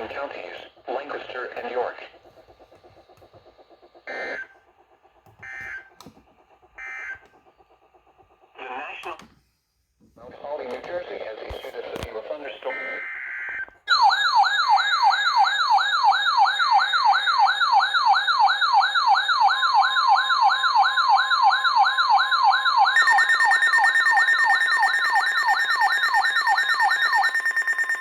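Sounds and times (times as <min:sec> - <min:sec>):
electronic siren warble: 0:15.1 - 0:28.0
steady electronic tones: 0:23.0 - 0:28.0.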